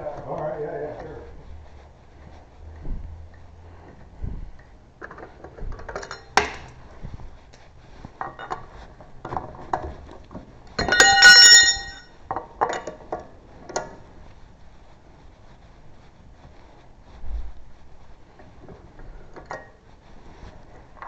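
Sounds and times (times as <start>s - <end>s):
metal tools clinking: 5.9s - 6.7s, 10.8s - 13.0s
ringing metallic clang: 10.8s - 12.1s.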